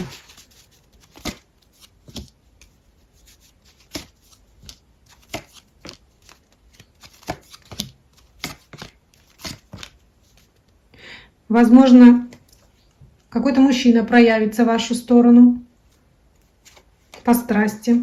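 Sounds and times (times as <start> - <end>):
cards tapping and flicking: 0.0 - 2.8, 3.4 - 10.0.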